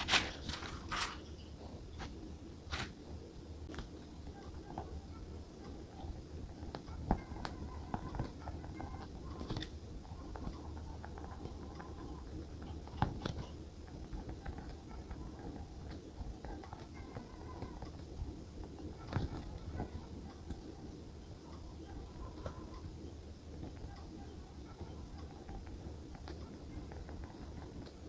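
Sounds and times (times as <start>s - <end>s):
faint background music: 0.0s - 28.0s
steady low hum: 0.0s - 28.0s.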